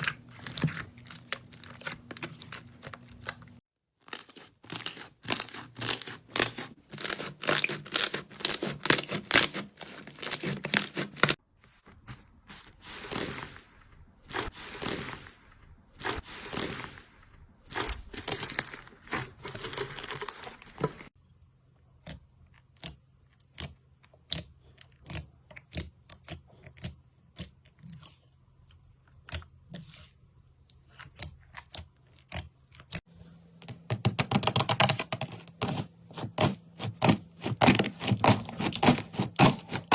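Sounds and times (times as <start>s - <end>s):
slime crackling and popping: 0.0s - 11.4s
slime squishing: 0.0s - 11.4s, 12.0s - 21.1s, 21.9s - 33.0s, 33.7s - 39.9s.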